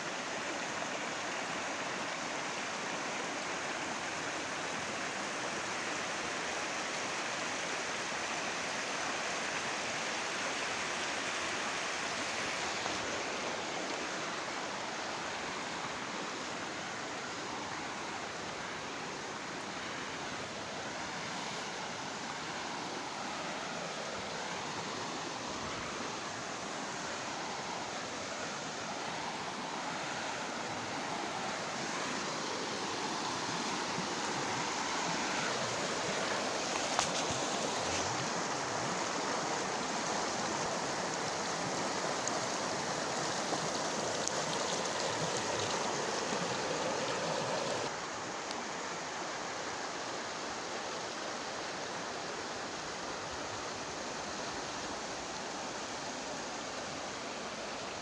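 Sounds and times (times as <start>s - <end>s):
river water rushing: 0.0s - 58.0s
faint click: 48.4s - 48.6s.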